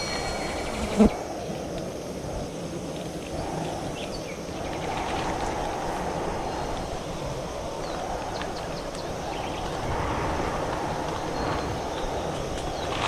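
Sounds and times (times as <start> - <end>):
strong wind on microphone: 0.0 - 13.0.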